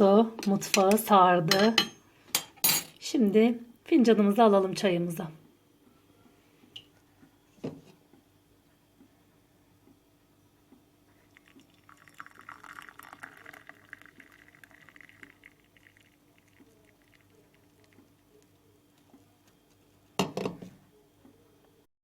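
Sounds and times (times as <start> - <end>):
tea pouring into a cup: 11.2 - 18.5.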